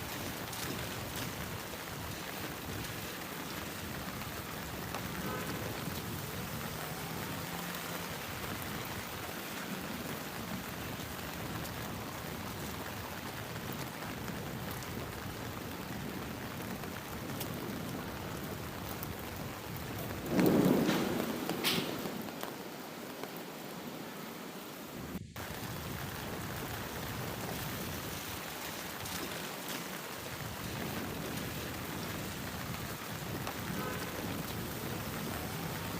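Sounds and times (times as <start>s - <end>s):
heavy rain: 0.0s - 35.9s
thunder crack: 19.2s - 22.5s.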